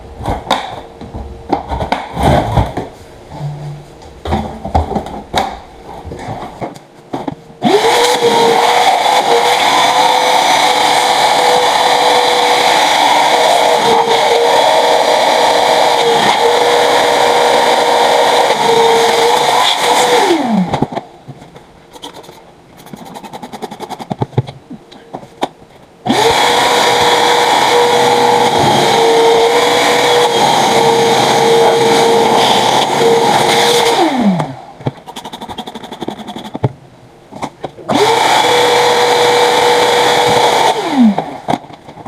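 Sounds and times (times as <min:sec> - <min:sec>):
small electric motor whine: 0:07.6 - 0:20.7, 0:26.1 - 0:34.4
clicks and handling noise: 0:20.7 - 0:25.9, 0:34.4 - 0:37.9, 0:41.2 - 0:42.0.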